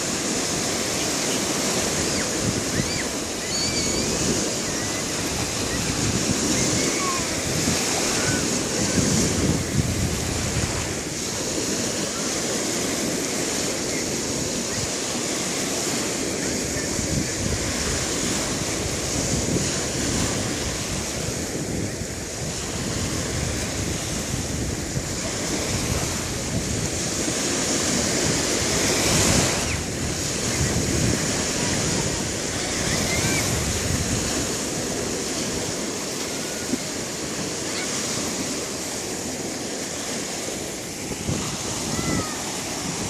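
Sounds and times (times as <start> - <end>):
sea waves washing onto beach: 0.0 - 43.0
wind rumbling on microphone: 0.0 - 43.0.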